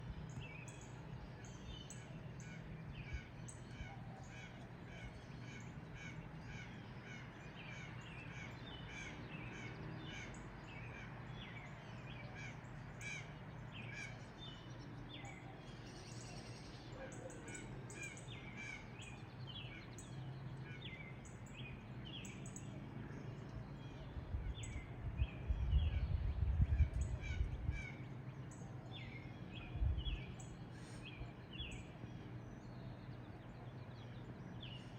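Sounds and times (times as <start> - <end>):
bird calls and chirps: 0.0 - 34.9
steady low hum: 12.4 - 34.9.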